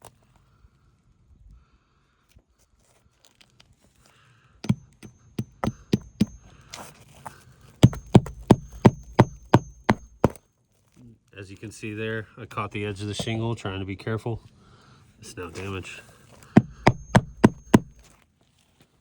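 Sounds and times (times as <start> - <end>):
hammer striking nail: 4.6 - 6.6, 7.8 - 10.4, 16.6 - 18.0.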